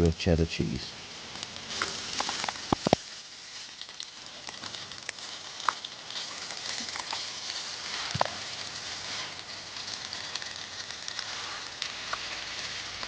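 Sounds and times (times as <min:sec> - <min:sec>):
food sizzling in a pan: 0:00.0 - 0:13.0.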